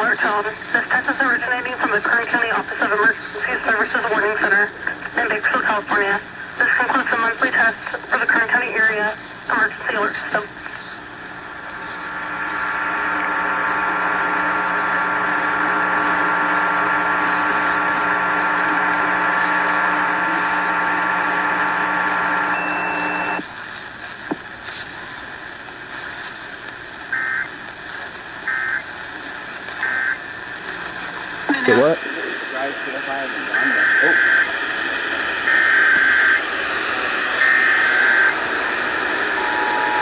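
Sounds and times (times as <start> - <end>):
loud steady alert buzz: 29.8 - 40.0.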